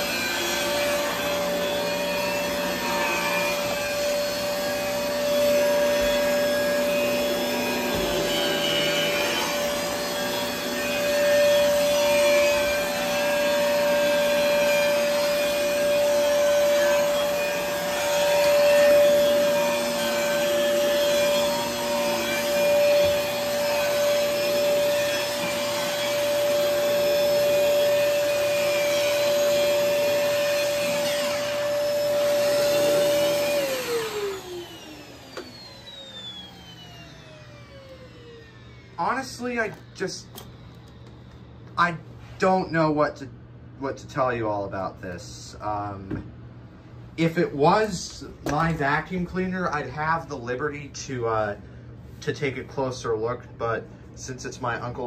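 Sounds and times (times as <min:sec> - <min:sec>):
vacuum cleaner running: 0:00.0 - 0:42.8.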